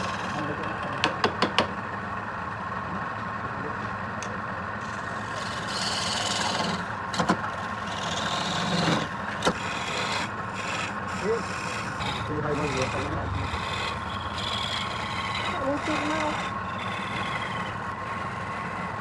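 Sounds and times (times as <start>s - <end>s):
tool hissing against spinning wood: 0.0s - 0.4s, 4.8s - 19.0s
lathe motor humming: 0.0s - 19.0s
sharp knocks: 1.0s - 1.7s.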